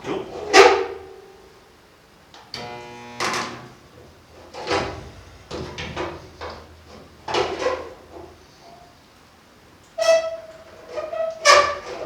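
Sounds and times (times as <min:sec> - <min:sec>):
spot welder electrical buzz: 0:02.5 - 0:06.5
steady low hum: 0:02.6 - 0:09.6.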